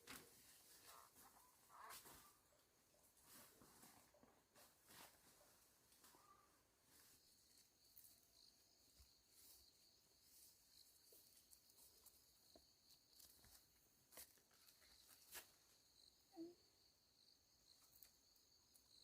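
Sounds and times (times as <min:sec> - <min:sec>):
faint high insect drone: 0:05.5 - 0:19.0.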